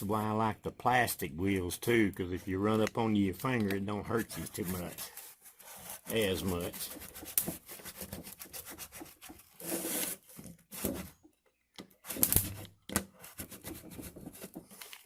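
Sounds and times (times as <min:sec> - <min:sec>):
spline roller scraping: 0:04.2 - 0:11.2.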